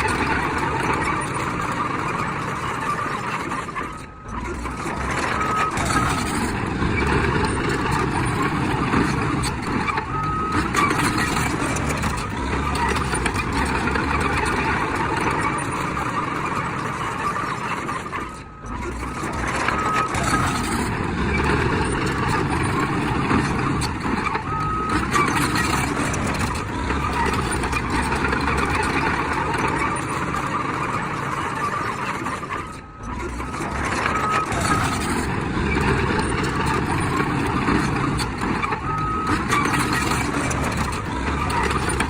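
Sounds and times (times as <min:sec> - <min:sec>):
diesel earthmoving machinery running: 0:00.0 - 0:42.0
reversing alarm beeping: 0:02.4 - 0:42.0.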